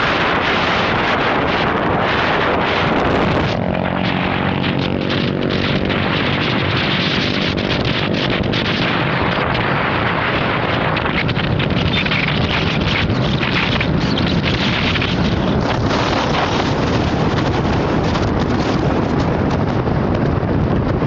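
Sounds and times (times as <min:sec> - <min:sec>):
wind buffeting microphone: 0:00.0 - 0:21.0.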